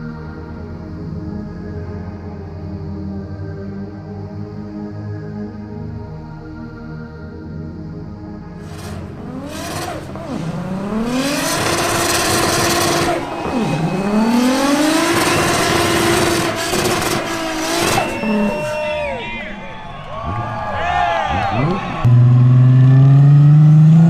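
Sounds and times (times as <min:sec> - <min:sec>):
car engine accelerating hard: 0:08.6 - 0:18.8, 0:20.1 - 0:24.0.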